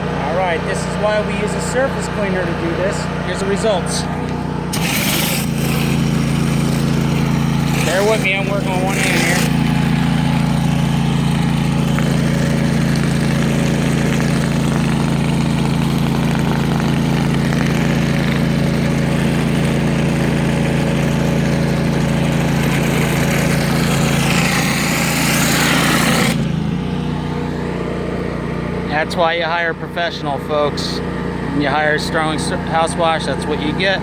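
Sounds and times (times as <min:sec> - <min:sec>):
pressure washer engine running: 0:00.0 - 0:34.0
water jet hissing on concrete: 0:04.6 - 0:26.7.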